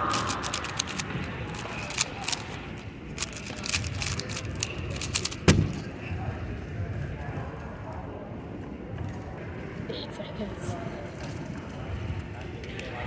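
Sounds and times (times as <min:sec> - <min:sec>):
sharp clicks and taps: 0:00.0 - 0:05.6.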